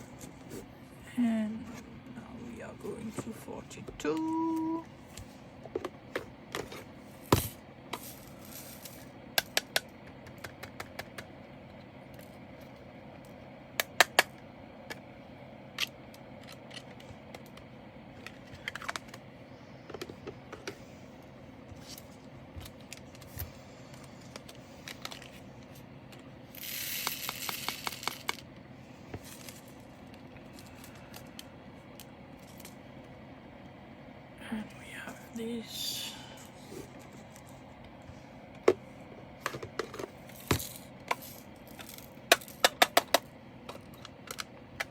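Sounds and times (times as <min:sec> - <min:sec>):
plastic beads clicking and rattling: 0:26.5 - 0:28.4.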